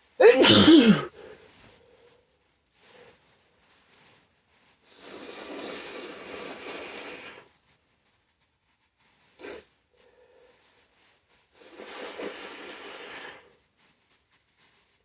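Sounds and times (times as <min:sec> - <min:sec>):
person blowing nose hard: 0:00.2 - 0:01.1, 0:04.9 - 0:07.4, 0:09.4 - 0:09.6, 0:11.6 - 0:13.5.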